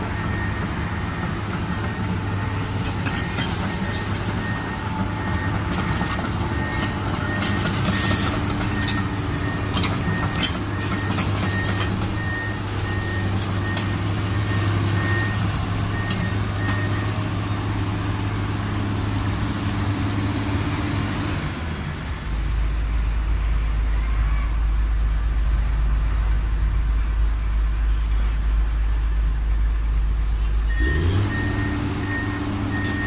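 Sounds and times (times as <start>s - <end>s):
warning alarm beeping: 0.0s - 17.2s, 30.7s - 33.0s
diesel engine running: 0.0s - 33.0s
metal clanks: 1.5s - 12.3s.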